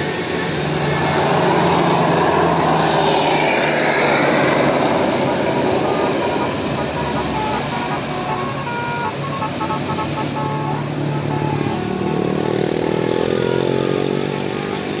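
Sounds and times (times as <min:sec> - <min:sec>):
bus engine revving: 0:00.0 - 0:15.0
bus horn playing melodic notes: 0:04.4 - 0:15.0.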